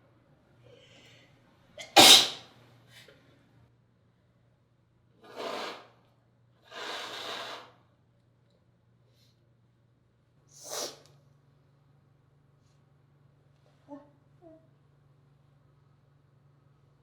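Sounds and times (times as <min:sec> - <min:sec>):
quiet breathy sounds: 0:00.5 - 0:01.6
person sneezing loudly: 0:01.8 - 0:02.5.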